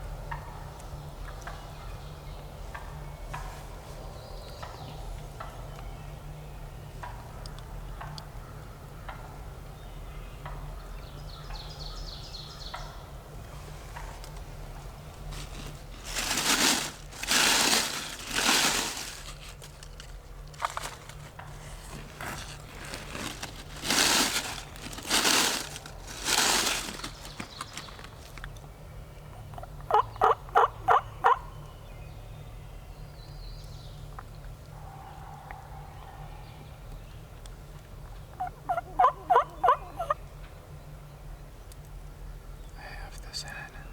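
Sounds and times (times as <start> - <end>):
turkeys gobbling: 29.6 - 31.4, 38.3 - 40.2
turkey yelps: 29.9 - 31.4, 38.3 - 40.2.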